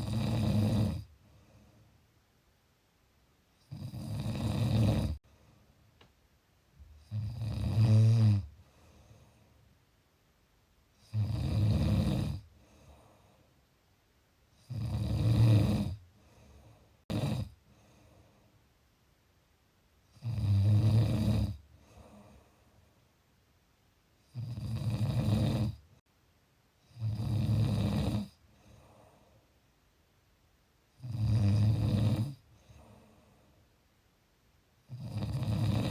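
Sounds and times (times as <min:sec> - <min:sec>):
person snoring: 0:00.0 - 0:01.1, 0:03.6 - 0:05.2, 0:07.0 - 0:08.5, 0:11.0 - 0:13.1, 0:14.6 - 0:16.0, 0:17.1 - 0:17.6, 0:20.1 - 0:22.4, 0:24.3 - 0:25.8, 0:26.9 - 0:28.9, 0:31.0 - 0:33.0, 0:34.9 - 0:35.9
soft breaths: 0:00.0 - 0:02.2, 0:04.4 - 0:06.1, 0:08.4 - 0:09.9, 0:12.3 - 0:14.7, 0:15.8 - 0:18.9, 0:21.5 - 0:23.2, 0:28.2 - 0:29.9, 0:32.1 - 0:34.0.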